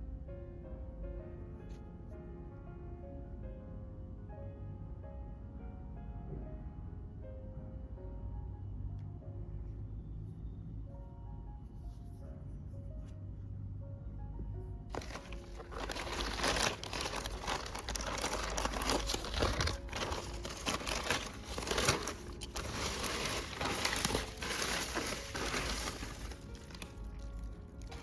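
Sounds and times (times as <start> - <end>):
soft background music: 0.0 - 28.0
packaging crinkling: 14.9 - 28.0.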